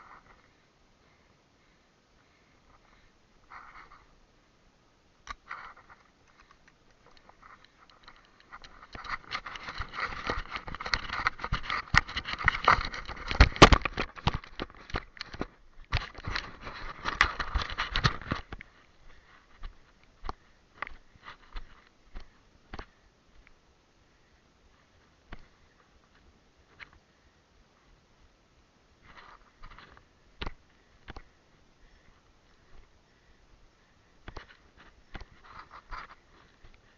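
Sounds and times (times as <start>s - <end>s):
faint scrapes: 2.2s - 4.2s.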